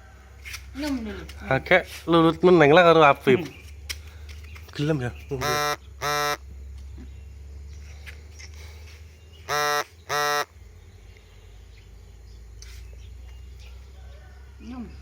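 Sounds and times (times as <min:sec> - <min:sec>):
short flat buzzes: 0:05.4 - 0:06.5, 0:09.4 - 0:10.6.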